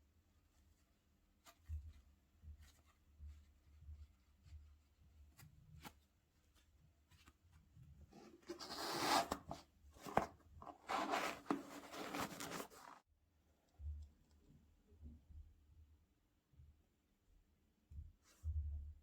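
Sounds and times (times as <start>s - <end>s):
packaging rustling and crinkling: 8.2s - 13.0s.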